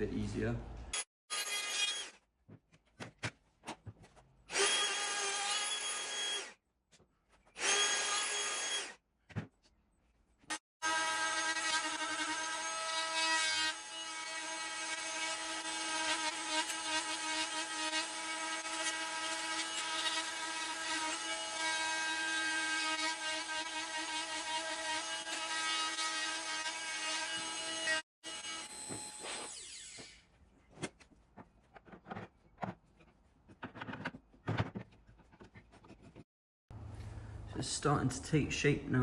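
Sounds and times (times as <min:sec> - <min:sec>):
router cutting wood: 0:04.5 - 0:06.5, 0:07.6 - 0:08.9, 0:10.8 - 0:30.3.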